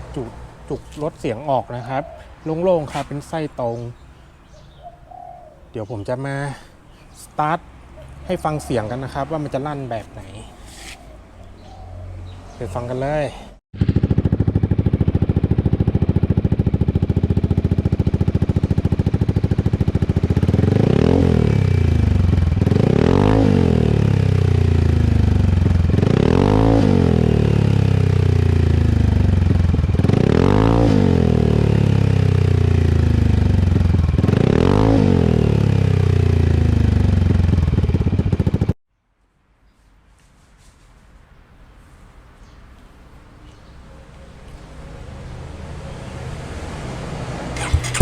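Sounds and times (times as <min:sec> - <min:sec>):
scooter engine idling and revving: 0:07.8 - 0:13.0, 0:13.8 - 0:38.8, 0:44.4 - 0:48.0.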